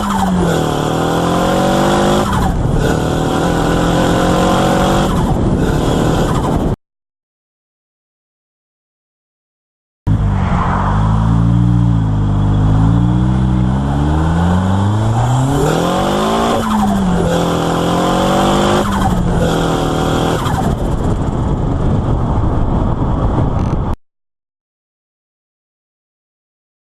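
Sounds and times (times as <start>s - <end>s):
car engine revving: 0.0s - 6.8s, 10.1s - 21.6s.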